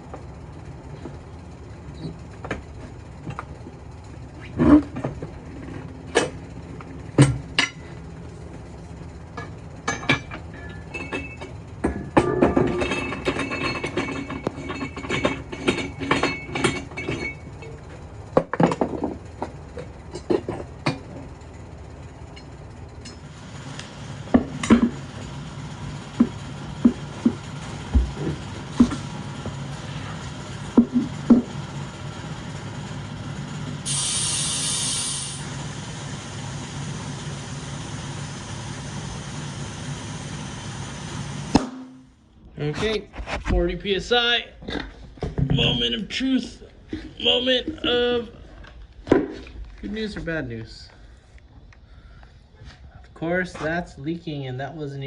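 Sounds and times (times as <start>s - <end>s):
steady low hum: 0.0s - 55.0s
metal clinking and clattering: 9.4s - 17.8s
compressed air hissing: 33.8s - 41.6s.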